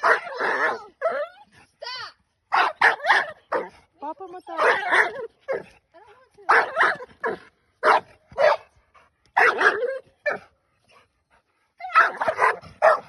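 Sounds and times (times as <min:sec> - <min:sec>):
dog barking: 0:00.0 - 0:00.8, 0:02.5 - 0:03.7, 0:04.6 - 0:05.7, 0:06.5 - 0:08.7, 0:09.4 - 0:10.4, 0:11.9 - 0:13.0.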